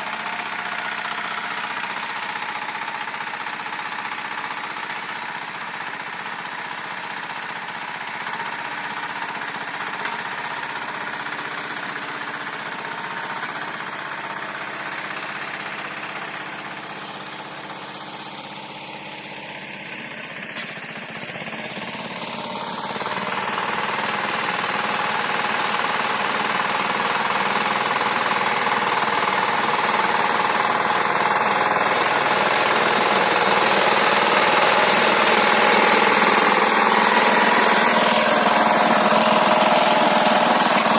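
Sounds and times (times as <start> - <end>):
rotary tiller working soil: 0.0 - 40.9
tractor engine running: 0.0 - 40.9.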